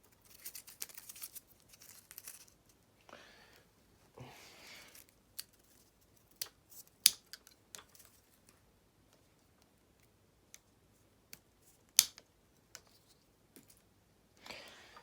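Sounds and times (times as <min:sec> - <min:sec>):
rustling and crinkling: 0:00.0 - 0:02.8, 0:04.8 - 0:09.6.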